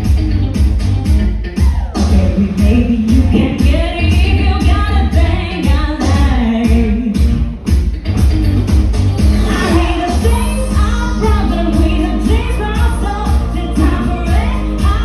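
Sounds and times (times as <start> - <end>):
pop music with steady beat: 0.0 - 15.0
woman singing: 1.6 - 7.5, 9.4 - 15.0.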